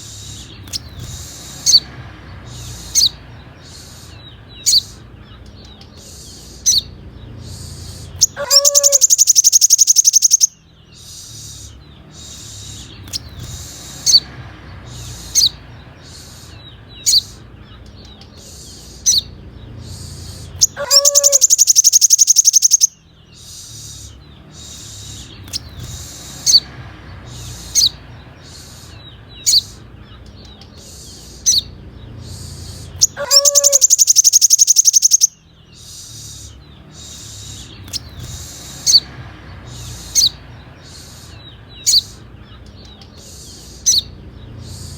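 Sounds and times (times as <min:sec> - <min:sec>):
bird high rapid trill: 0:00.0 - 0:17.8, 0:18.4 - 0:44.9
bird sharp high chips: 0:07.4 - 0:14.2, 0:19.9 - 0:26.6, 0:32.3 - 0:39.1.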